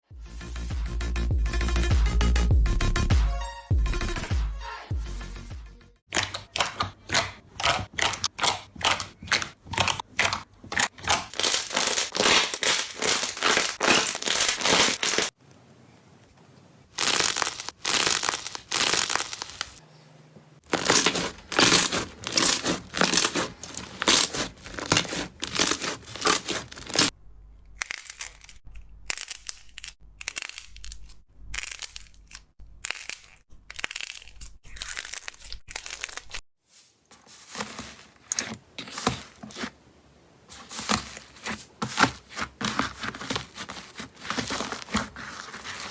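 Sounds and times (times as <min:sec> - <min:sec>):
slime crackling and popping: 0:06.1 - 0:15.4, 0:17.0 - 0:19.8, 0:20.7 - 0:27.1, 0:27.8 - 0:36.4.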